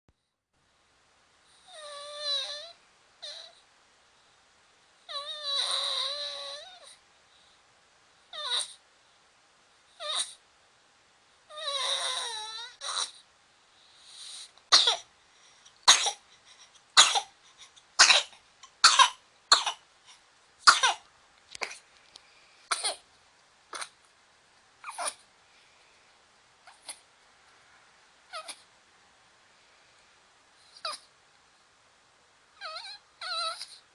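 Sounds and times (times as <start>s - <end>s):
cat wavering cries: 1.7s - 3.6s, 5.1s - 7.0s, 8.3s - 8.8s, 10.0s - 10.4s, 11.5s - 13.2s, 24.8s - 25.2s, 32.6s - 33.8s.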